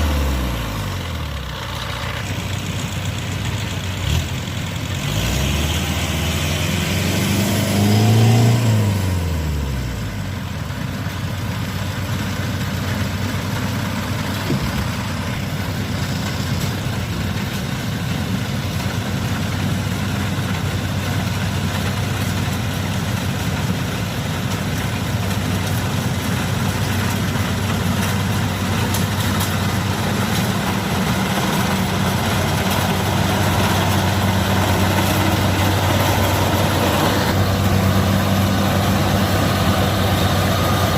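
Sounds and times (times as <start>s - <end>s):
diesel engine working under load: 0.0s - 40.9s.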